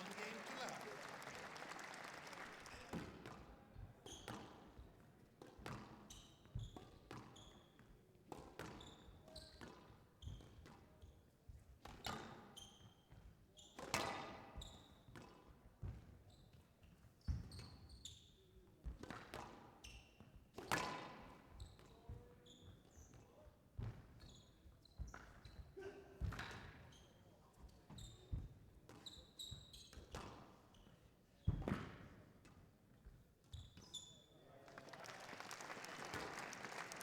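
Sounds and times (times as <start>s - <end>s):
court shoes squeaking: 4.0s - 4.6s, 28.9s - 30.0s, 33.5s - 34.4s.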